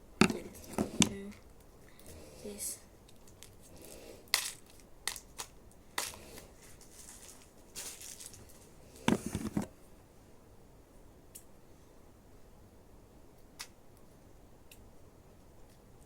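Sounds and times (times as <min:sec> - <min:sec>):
plastic packaging crinkling: 0:04.4 - 0:09.7
knocks and rattling: 0:09.1 - 0:09.7.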